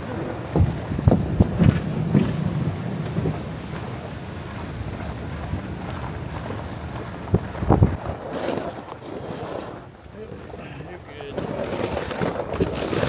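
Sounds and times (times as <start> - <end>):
vehicle rumble: 0.0 - 9.0
wind noise: 0.0 - 9.6.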